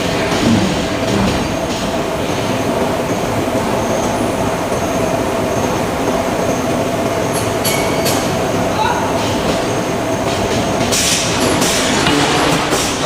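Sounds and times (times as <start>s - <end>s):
heavy industrial machinery rumble: 0.0s - 5.4s.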